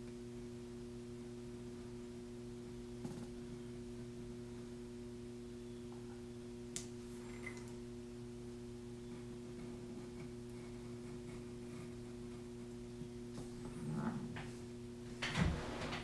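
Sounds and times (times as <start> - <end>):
electrical mains hum: 0.0 - 16.0.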